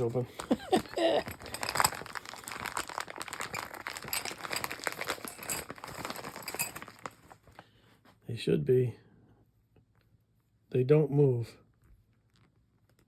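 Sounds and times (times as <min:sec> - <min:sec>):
plastic packaging crinkling: 0:00.0 - 0:07.8.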